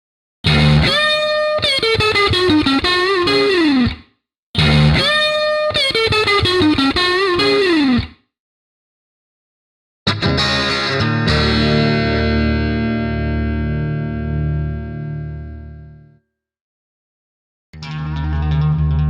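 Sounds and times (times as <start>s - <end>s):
electric guitar lead lick: 0.5s - 4.0s, 4.6s - 8.2s, 10.1s - 16.1s, 17.8s - 19.0s.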